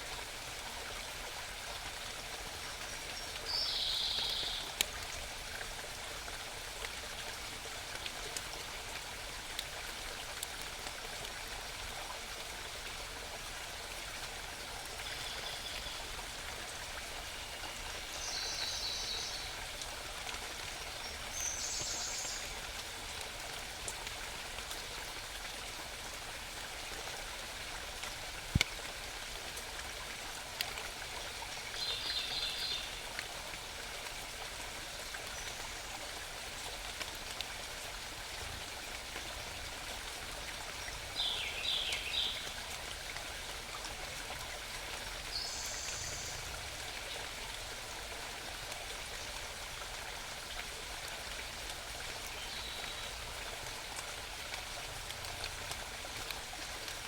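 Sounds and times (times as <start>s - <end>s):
mountain stream running: 0.0s - 57.0s
songbird singing: 3.1s - 4.8s, 15.0s - 16.2s, 17.1s - 19.6s, 21.0s - 22.6s, 31.8s - 33.0s, 41.2s - 42.6s, 45.3s - 46.4s.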